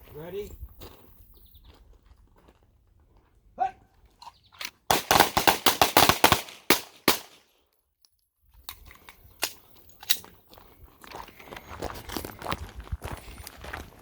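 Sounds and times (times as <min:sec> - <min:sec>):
person shouting command: 0:03.6 - 0:03.9
handgun volley: 0:04.6 - 0:07.4.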